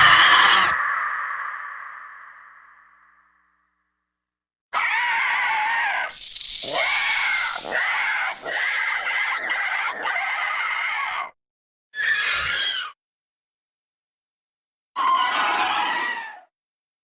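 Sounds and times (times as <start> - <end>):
cartoon dinosaur screeching: 0.0 - 2.7, 4.8 - 11.4, 12.0 - 13.0, 15.0 - 16.5.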